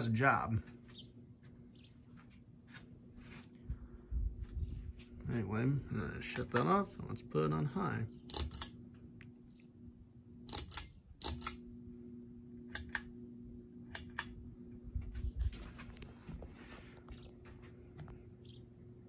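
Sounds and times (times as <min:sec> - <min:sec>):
ceiling fan motor humming: 0:00.0 - 0:19.0
fan speed switch clicking: 0:06.2 - 0:06.8, 0:10.5 - 0:11.7, 0:12.6 - 0:13.2, 0:13.8 - 0:14.4.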